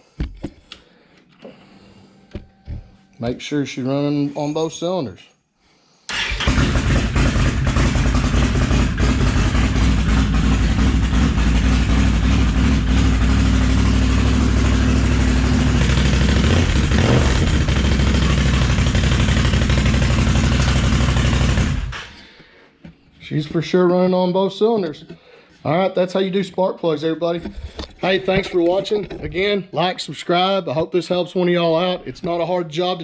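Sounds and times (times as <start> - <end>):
v-twin engine running: 6.1 - 22.0.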